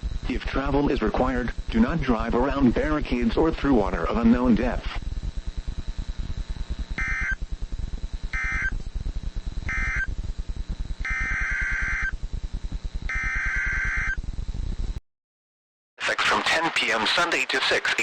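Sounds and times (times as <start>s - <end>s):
low pulsing hum: 0.0s - 15.0s
digital data bursts: 11.0s - 12.1s.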